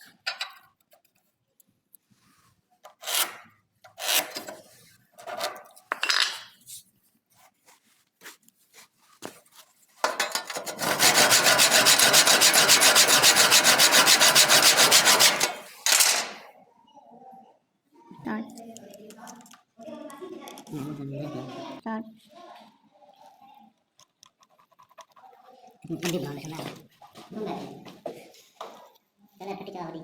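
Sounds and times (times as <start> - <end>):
rasping and scraping on wood: 2.9 - 5.7, 10.0 - 16.4.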